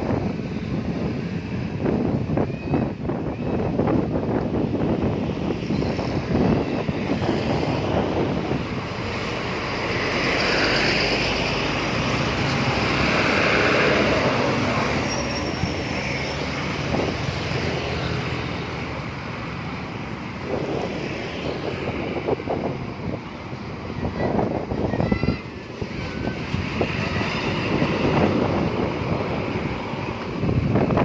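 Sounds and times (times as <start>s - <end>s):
bus passing by: 0.0s - 31.0s
wind buffeting microphone: 0.0s - 31.0s.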